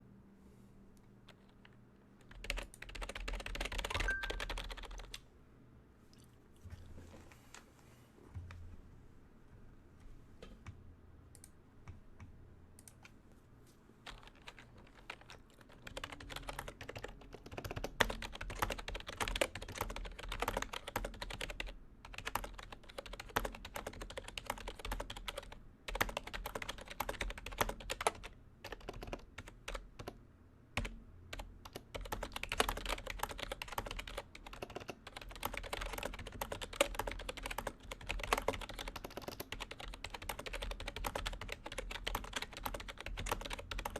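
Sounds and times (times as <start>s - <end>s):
typing on keyboard: 1.3s - 5.2s, 14.0s - 30.2s, 30.8s - 43.9s.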